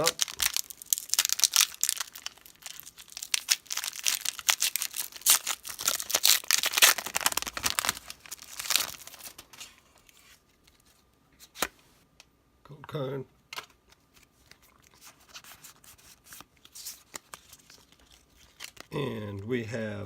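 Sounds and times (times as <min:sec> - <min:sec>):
foil wrapper tearing and crinkling: 0:00.0 - 0:09.4, 0:15.7 - 0:18.9.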